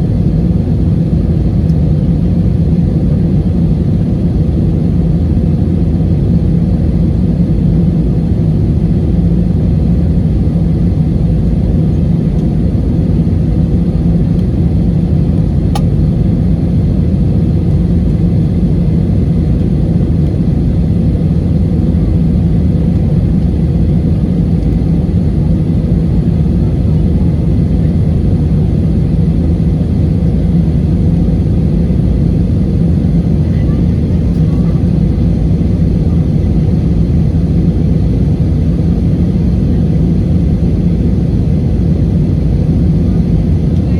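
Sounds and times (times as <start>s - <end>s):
jet engine cabin rumble: 0.0s - 43.9s
brief click: 15.7s - 15.9s.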